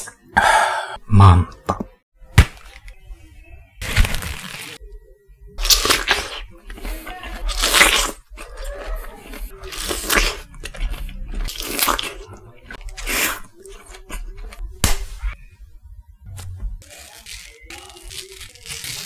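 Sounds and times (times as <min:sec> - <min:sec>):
crunchy food being chewed: 0:05.6 - 0:14.6.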